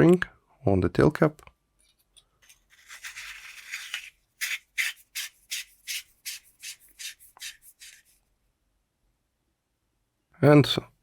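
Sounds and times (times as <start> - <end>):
threads rasping: 2.4 - 8.2.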